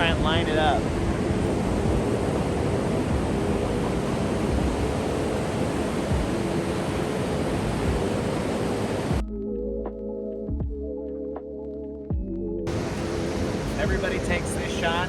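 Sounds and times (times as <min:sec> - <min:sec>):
ocean surf: 0:00.0 - 0:09.2, 0:12.7 - 0:15.0
wind on microphone: 0:00.0 - 0:09.2, 0:12.7 - 0:15.0
soft background music: 0:00.0 - 0:15.0.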